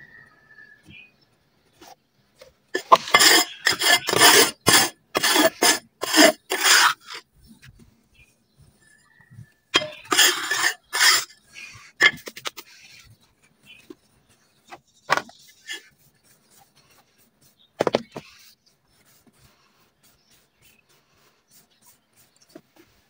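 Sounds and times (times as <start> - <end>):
gritty dirt scraping: 2.8 - 7.2, 9.8 - 13.1.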